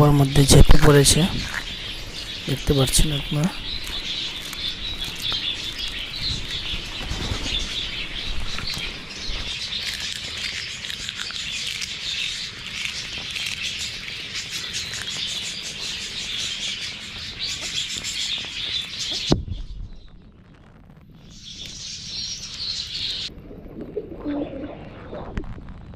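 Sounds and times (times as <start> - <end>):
budgerigars chattering and chirping: 0.0 - 19.4
wings flapping: 3.4 - 10.2.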